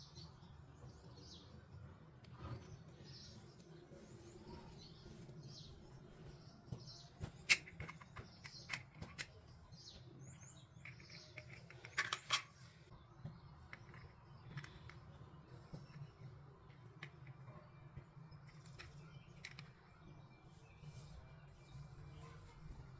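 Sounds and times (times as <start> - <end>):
plastic toy pieces clicking: 7.5 - 9.4, 10.8 - 12.6, 18.4 - 19.8.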